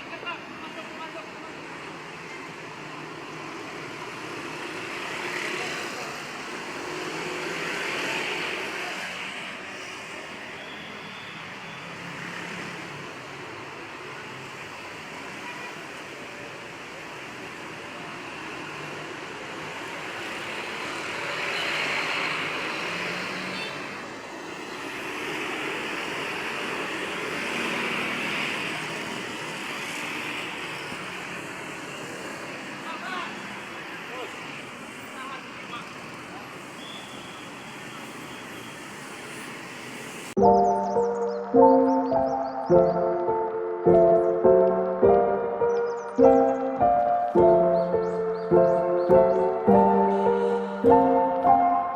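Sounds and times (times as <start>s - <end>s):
vehicles passing on road: 0.0s - 51.9s.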